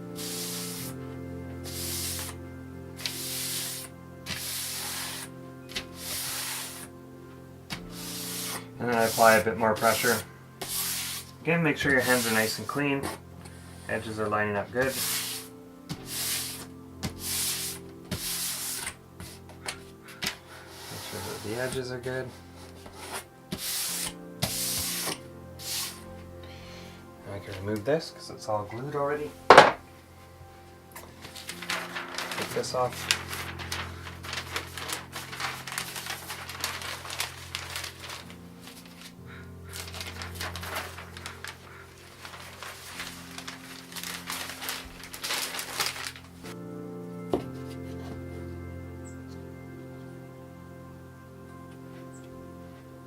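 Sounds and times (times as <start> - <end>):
soft background music: 0.0 - 53.0
hands rubbing paper on board: 0.2 - 1.0, 1.6 - 2.4, 3.0 - 6.9, 7.7 - 13.2, 14.8 - 21.8, 22.6 - 26.1, 31.2 - 46.2.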